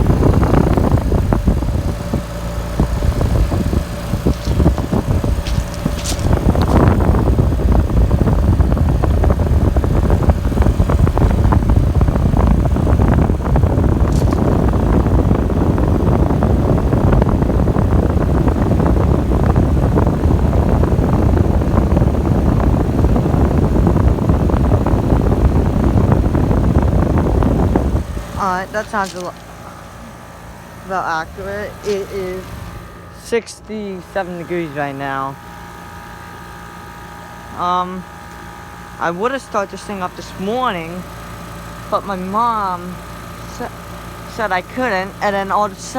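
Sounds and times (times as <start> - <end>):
heat pump fan air rushing: 0.0 - 45.9
heat pump unit humming: 0.0 - 45.9.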